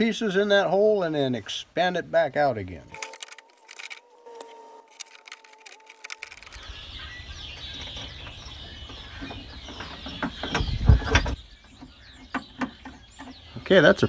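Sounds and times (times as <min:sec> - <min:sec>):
birds chirping: 0:00.0 - 0:14.0
small metal parts clicking: 0:02.9 - 0:04.1, 0:04.9 - 0:06.6.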